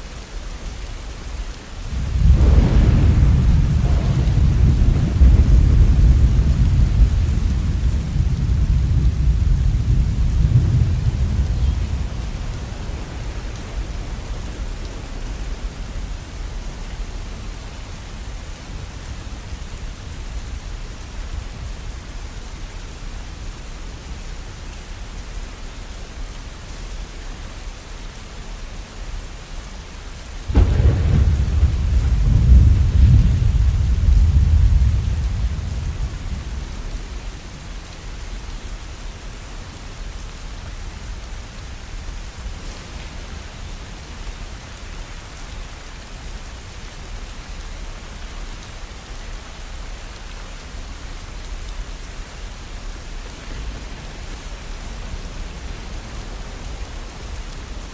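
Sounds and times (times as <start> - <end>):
steady rain falling: 0.0 - 57.9
thunder rumbling: 1.9 - 18.3, 30.4 - 37.9, 51.6 - 57.9.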